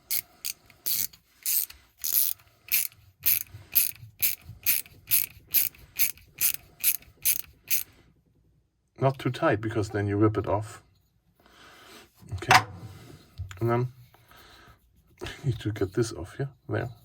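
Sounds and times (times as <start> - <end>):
hand ratchet clicking: 0.0 - 7.9.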